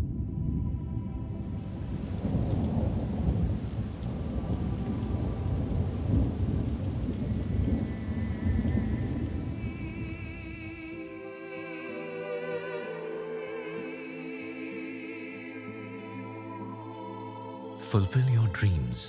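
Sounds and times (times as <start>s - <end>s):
heavy rain: 0.4s - 11.2s, 17.8s - 19.0s
deep rolling thunder: 1.4s - 10.9s
faint music: 7.6s - 19.0s.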